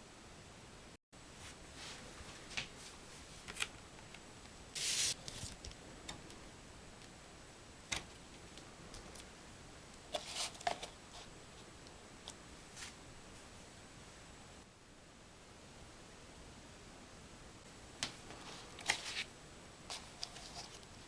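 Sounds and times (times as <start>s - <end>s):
paper rustling: 4.8s - 5.8s, 10.1s - 11.3s, 18.2s - 19.3s, 19.9s - 21.0s.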